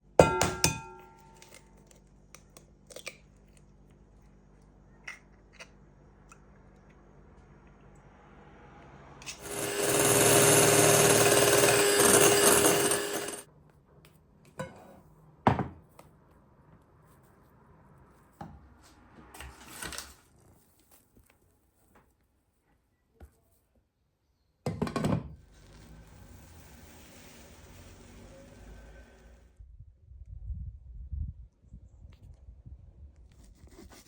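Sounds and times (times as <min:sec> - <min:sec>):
electric hand mixer whisking: 0:09.4 - 0:13.4.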